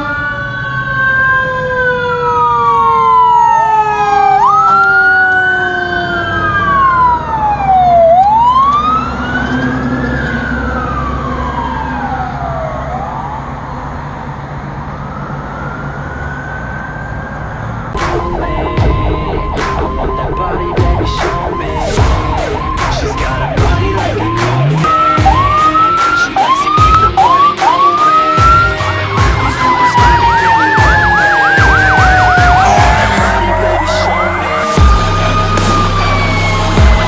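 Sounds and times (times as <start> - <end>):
fire truck sirens wailing: 0.0 - 37.0
truck engines rumbling: 1.2 - 37.0
steady tone: 17.9 - 37.0.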